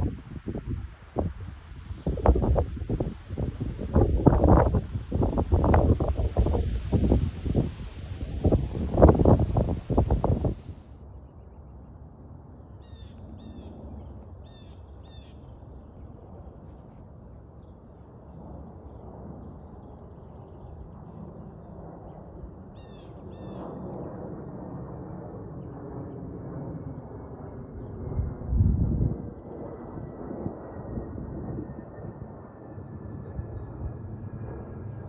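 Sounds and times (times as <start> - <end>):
low outdoor rumble: 0.0 - 11.2.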